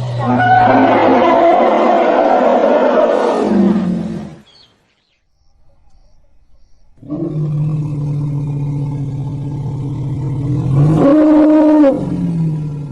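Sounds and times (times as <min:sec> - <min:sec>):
elephant low call: 0:00.0 - 0:04.7.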